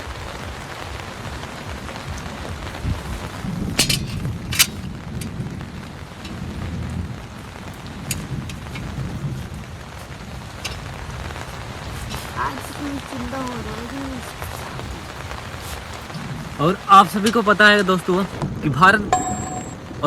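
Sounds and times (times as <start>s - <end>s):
low rumble of thunder: 0.0s - 11.9s
heavy rain on a tent roof: 0.0s - 19.2s, 19.8s - 20.0s.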